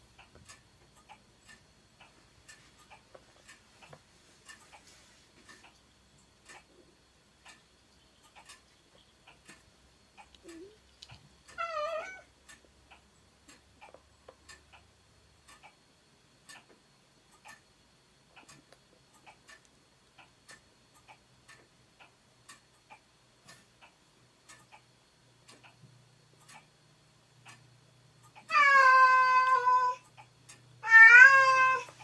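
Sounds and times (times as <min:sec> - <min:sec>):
clock ticking faintly: 0:00.0 - 0:30.8
cat meowing: 0:11.6 - 0:12.3, 0:28.5 - 0:30.0, 0:30.8 - 0:31.9.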